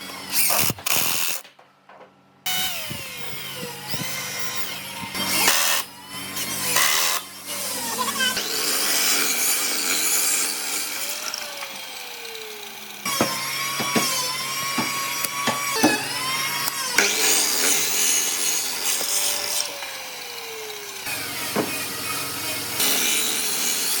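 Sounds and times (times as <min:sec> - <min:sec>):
high-pitched tool whine: 0:02.5 - 0:24.0
rough sawing on wood: 0:05.0 - 0:24.0.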